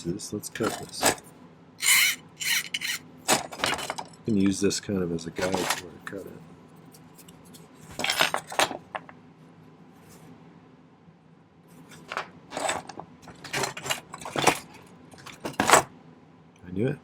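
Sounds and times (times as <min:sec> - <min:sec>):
small metal tools clinking: 0:01.8 - 0:04.2.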